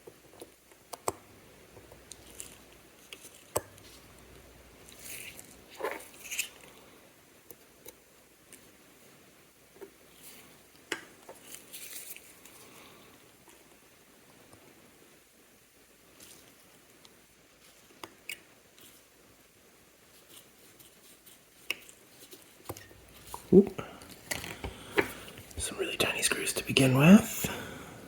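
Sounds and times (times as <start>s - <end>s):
scrapes and rustles: 1.9s - 6.9s, 10.1s - 13.7s, 20.0s - 25.6s.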